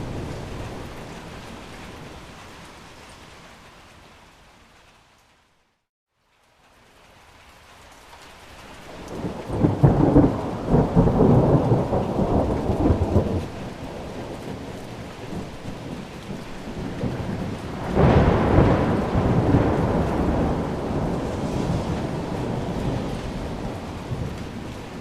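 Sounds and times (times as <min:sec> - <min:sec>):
heavy rain: 0:00.0 - 0:25.0
rolling thunder: 0:09.1 - 0:25.0.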